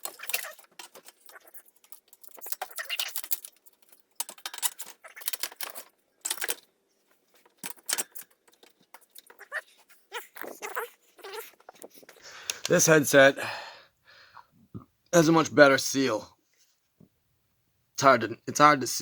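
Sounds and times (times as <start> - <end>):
bicycle parts clicking and rattling: 0.0 - 10.7.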